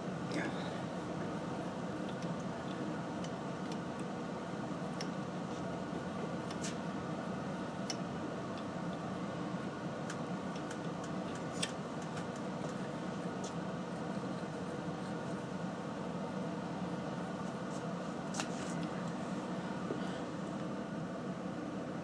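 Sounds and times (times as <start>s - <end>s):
lathe humming: 0.0s - 21.9s.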